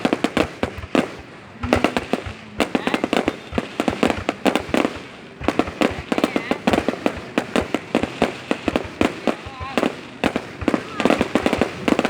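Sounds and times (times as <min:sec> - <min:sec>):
fireworks cracking and banging: 0:00.0 - 0:12.0.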